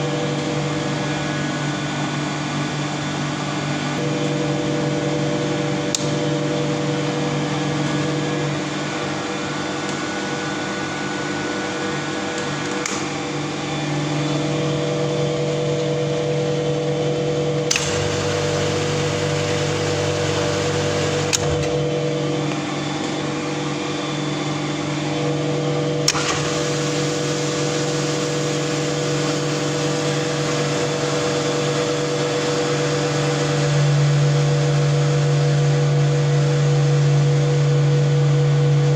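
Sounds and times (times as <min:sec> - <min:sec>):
motor humming: 0:12.2 - 0:37.9.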